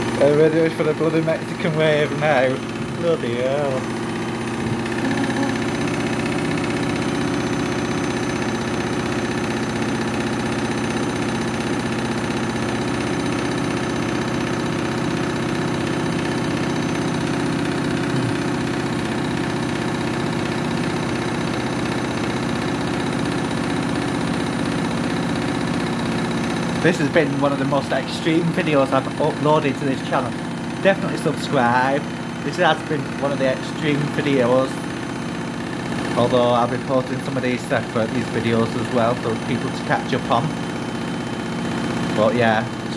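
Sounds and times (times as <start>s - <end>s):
washing machine spinning: 0.0s - 42.9s.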